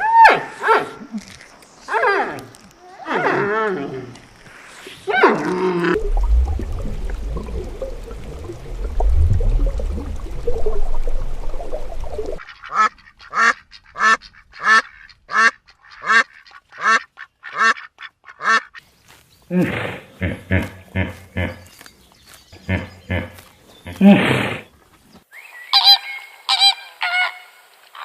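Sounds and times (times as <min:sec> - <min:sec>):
low rumble: 0:06.0 - 0:12.4.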